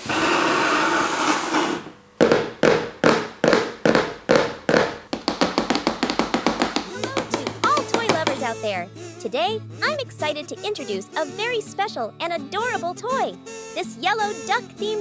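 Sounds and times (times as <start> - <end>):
sharp taps: 2.2 - 8.6.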